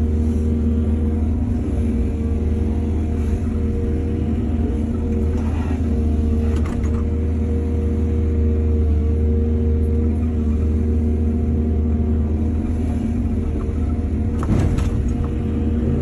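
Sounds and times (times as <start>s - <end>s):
excavator diesel engine droning: 0.0s - 16.0s.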